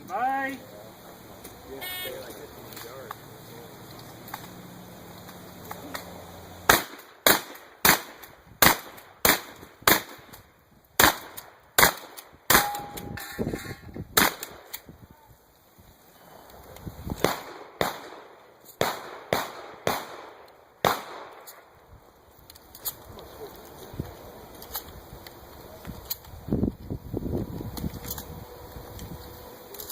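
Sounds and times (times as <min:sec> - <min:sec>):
shotgun shots: 0:06.7 - 0:10.3, 0:11.0 - 0:13.1, 0:14.2 - 0:14.7, 0:17.2 - 0:21.4.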